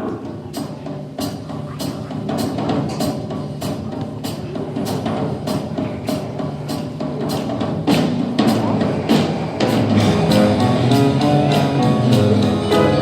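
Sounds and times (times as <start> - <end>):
steady percussion beat: 0.0 - 13.0
instrumental music: 9.7 - 13.0.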